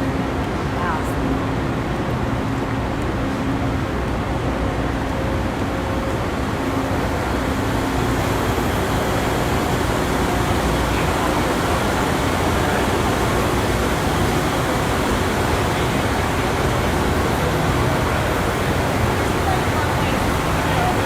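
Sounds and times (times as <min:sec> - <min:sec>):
ventilation running: 0:00.0 - 0:21.0
machinery running: 0:05.5 - 0:21.0.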